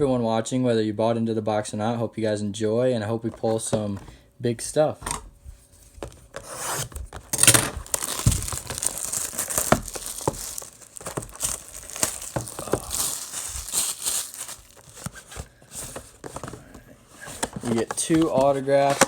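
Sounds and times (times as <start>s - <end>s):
plastic wrapping tearing and crinkling: 6.2s - 16.2s.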